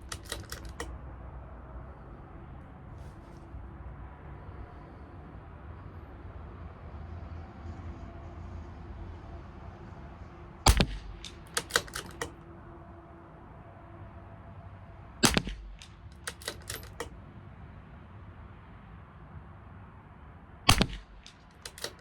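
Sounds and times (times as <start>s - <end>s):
rifle bolt clicking: 0.0s - 0.9s, 10.7s - 12.4s, 15.2s - 17.1s, 20.7s - 22.0s
rifle shots: 0.0s - 0.9s, 10.7s - 12.3s, 15.2s - 17.1s, 20.7s - 22.0s.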